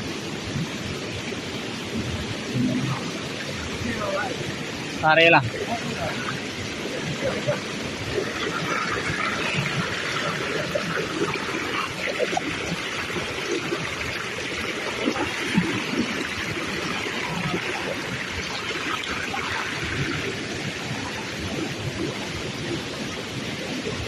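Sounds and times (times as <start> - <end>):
river water gurgling: 0.0 - 24.0
small water splashes: 0.0 - 24.0.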